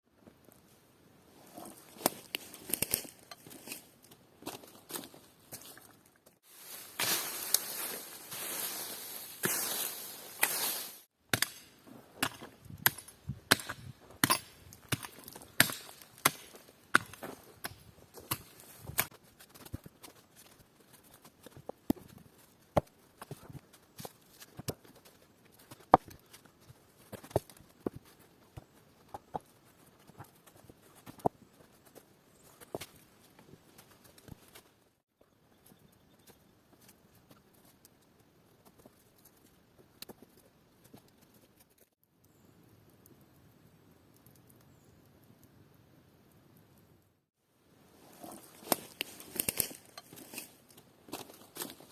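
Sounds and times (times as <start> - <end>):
rustling: 1.3 - 11.1, 47.9 - 51.9.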